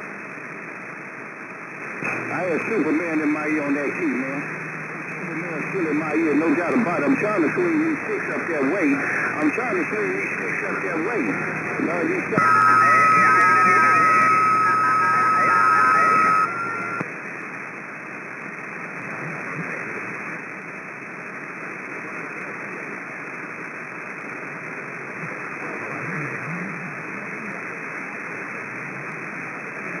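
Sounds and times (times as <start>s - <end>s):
radio static hiss: 1.7s - 17.4s
garbled voice on radio: 2.1s - 17.0s
radio whistle: 5.3s - 17.1s.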